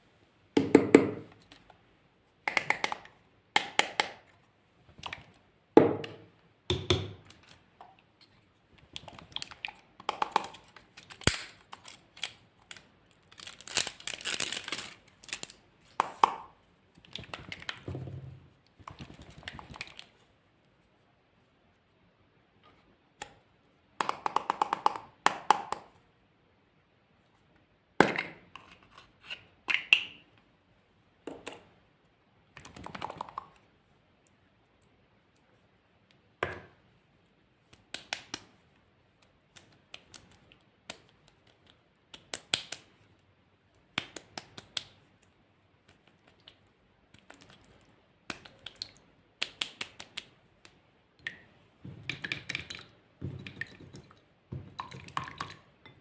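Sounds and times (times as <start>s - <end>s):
small objects clicking and tapping: 2.5s - 4.3s, 8.8s - 18.0s, 24.0s - 26.0s, 48.3s - 56.0s.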